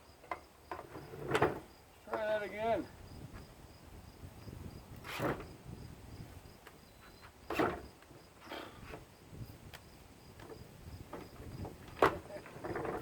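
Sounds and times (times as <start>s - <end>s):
crickets chirping: 0.0s - 13.0s
knocks and clatters on mower: 10.4s - 13.0s.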